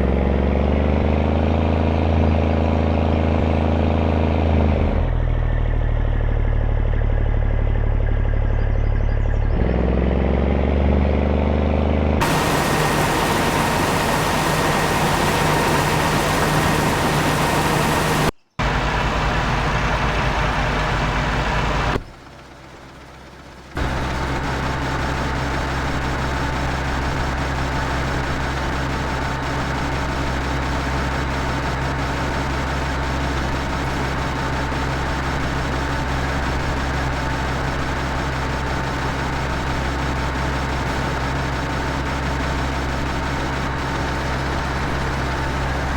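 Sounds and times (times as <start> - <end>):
engine running: 9.3 - 45.9.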